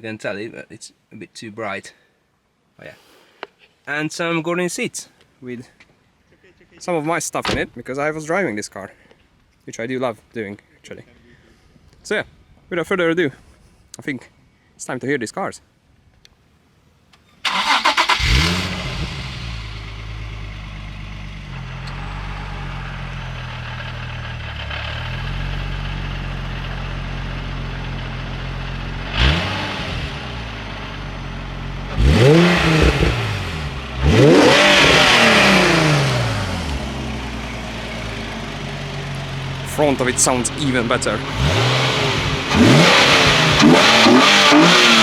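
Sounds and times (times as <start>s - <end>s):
car engine starting and idling: 17.4s - 45.0s
engine throttle blips: 17.5s - 22.6s, 31.8s - 45.0s.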